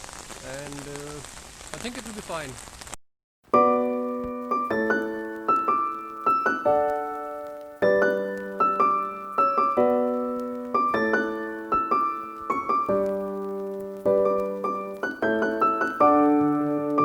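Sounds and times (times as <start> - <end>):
gentle piano music: 3.5 - 17.0.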